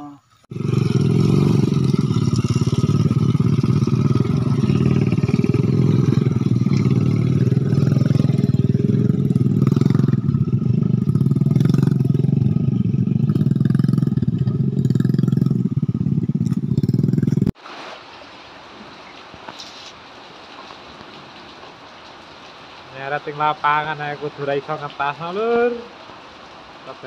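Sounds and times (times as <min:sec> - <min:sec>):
engine running loud: 0:00.5 - 0:17.5.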